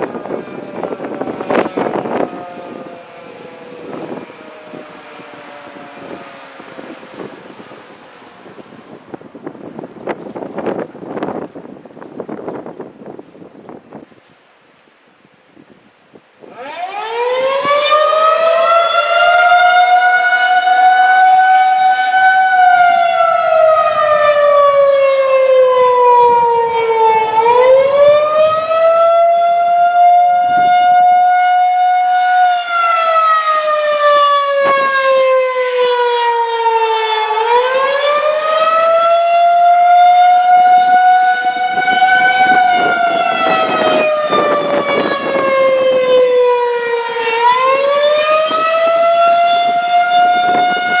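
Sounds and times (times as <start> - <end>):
rotating siren wailing: 0.0 - 12.7, 16.4 - 51.0.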